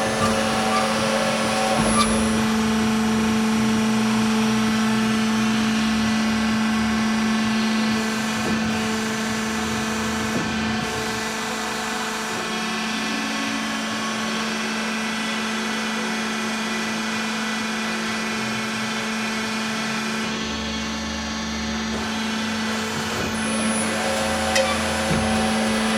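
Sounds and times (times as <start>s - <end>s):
band saw hum and whine: 0.0s - 25.9s
deeper hum: 20.2s - 25.9s.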